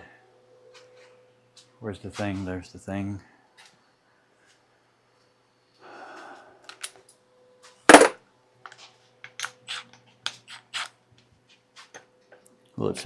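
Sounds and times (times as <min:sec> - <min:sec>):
loud metal clack: 0:07.9 - 0:08.2
metal tools clinking: 0:07.9 - 0:08.2.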